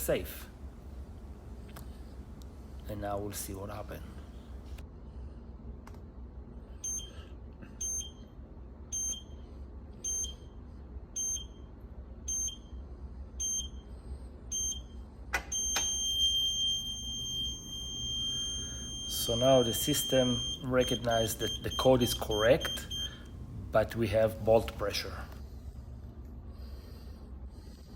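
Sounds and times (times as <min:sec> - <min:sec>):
long steady tone: 0:06.6 - 0:25.9.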